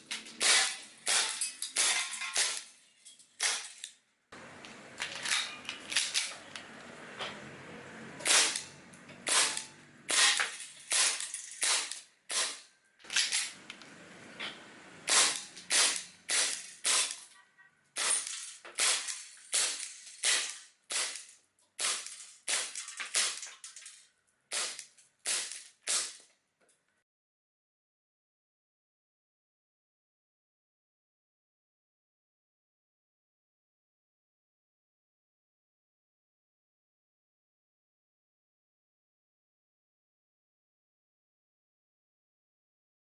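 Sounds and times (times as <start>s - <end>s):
airsoft pistol shots: 0.4s - 2.6s, 8.2s - 8.7s, 9.3s - 12.6s, 15.1s - 17.2s, 18.0s - 21.2s, 24.5s - 26.2s.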